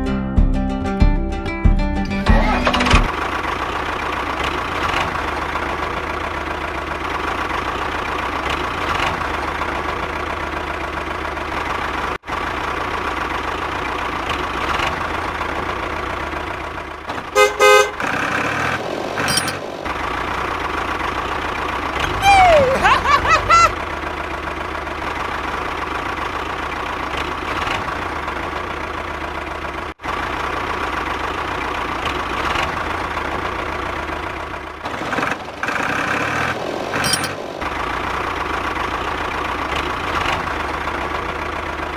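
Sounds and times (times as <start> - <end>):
model tractor engine running: 2.4 - 41.9
horn toots: 17.2 - 18.5.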